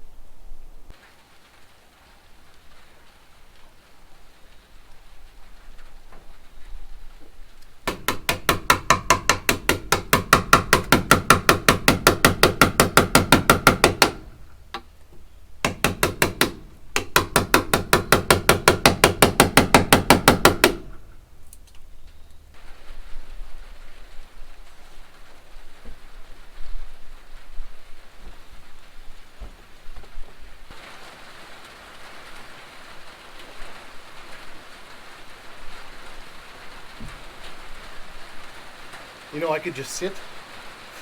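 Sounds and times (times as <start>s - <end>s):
rapid ringing hammer blows: 7.9s - 14.4s.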